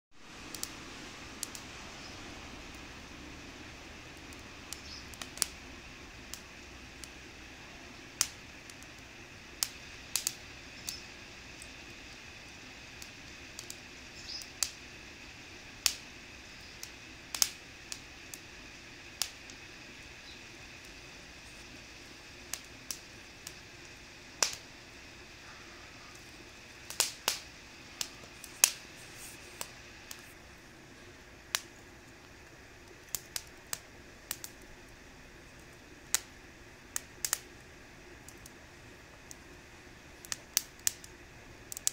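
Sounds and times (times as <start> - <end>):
wood fire crackling and popping: 0.1 - 41.9.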